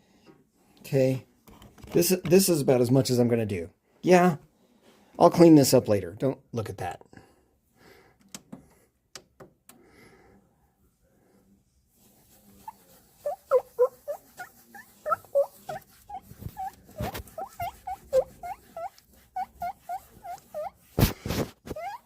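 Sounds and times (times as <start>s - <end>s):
wipe squeaking on hard surface: 12.2s - 22.0s.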